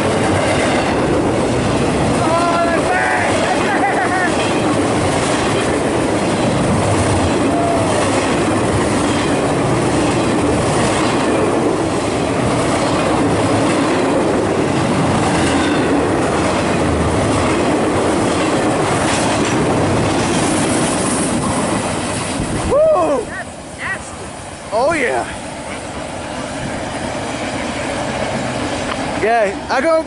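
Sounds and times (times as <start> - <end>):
clickety-clack over rail joints: 0.0 - 22.6, 24.7 - 30.0
freight train wheels rumbling: 0.0 - 30.0.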